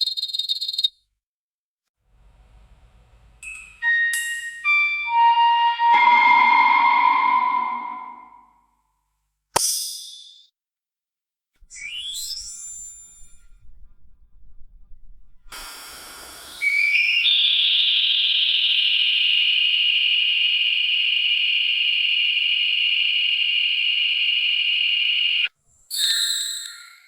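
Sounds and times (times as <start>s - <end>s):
electric lights whining: 11.6s - 25.5s
hiss: 15.5s - 17.4s.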